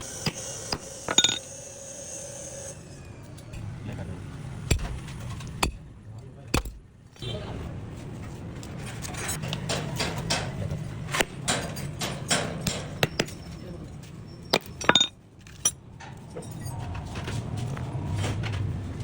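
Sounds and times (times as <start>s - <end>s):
metallic clinks and knocks: 1.1s - 1.4s, 11.5s - 17.0s.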